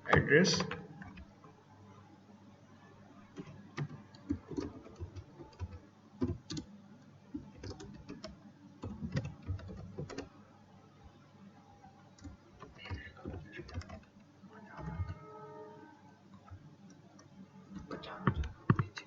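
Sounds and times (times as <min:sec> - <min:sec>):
computer keyboard typing: 0:03.4 - 0:06.7, 0:07.3 - 0:10.3, 0:12.2 - 0:15.4, 0:16.4 - 0:19.0.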